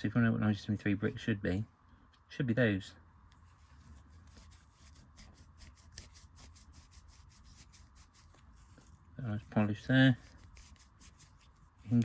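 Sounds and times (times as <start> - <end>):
cloth rubbing on plastic: 3.5 - 12.0.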